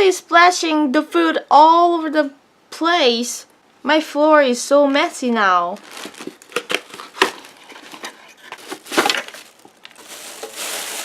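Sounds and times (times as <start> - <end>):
rustling: 5.6 - 11.0.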